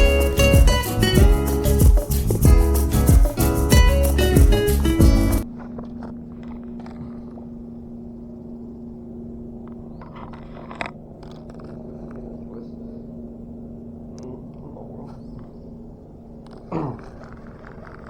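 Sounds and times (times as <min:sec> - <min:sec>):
low mechanical hum: 0:00.0 - 0:18.0.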